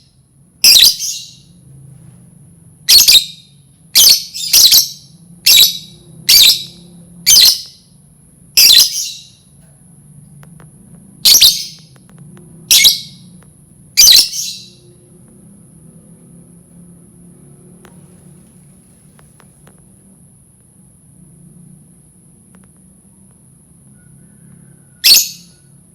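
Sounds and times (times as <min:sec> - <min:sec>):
faint low hum: 0:00.0 - 0:25.9
bird shrill screeching calls: 0:00.6 - 0:01.4, 0:04.0 - 0:07.8, 0:08.6 - 0:09.4, 0:11.3 - 0:11.9, 0:14.0 - 0:14.8, 0:24.3 - 0:25.7.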